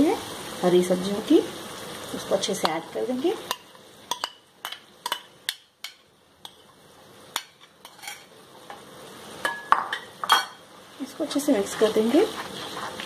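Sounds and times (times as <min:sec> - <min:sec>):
faint sizzle: 0:00.0 - 0:13.0
spoon clinking and scraping pan: 0:03.5 - 0:06.8, 0:07.4 - 0:08.8, 0:09.4 - 0:10.6.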